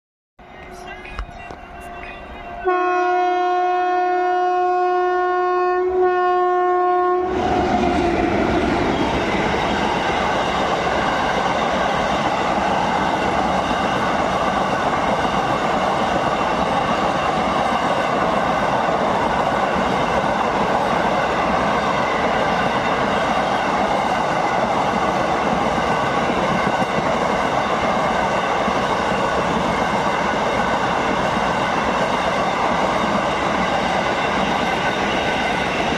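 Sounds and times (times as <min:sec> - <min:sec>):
train wheels running on rails: 0:00.4 - 0:02.8, 0:07.3 - 0:35.9
train horn blast: 0:00.6 - 0:07.4.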